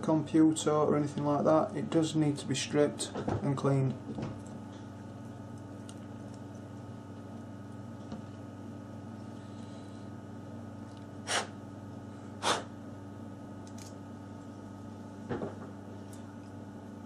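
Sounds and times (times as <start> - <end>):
low electrical hum: 0.0 - 17.0
short hissing noises: 11.2 - 11.6, 12.4 - 12.7.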